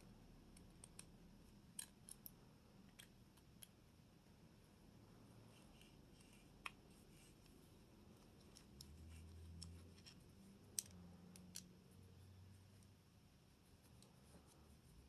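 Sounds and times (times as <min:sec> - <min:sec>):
light clicks of parts and tool: 0:08.2 - 0:11.7.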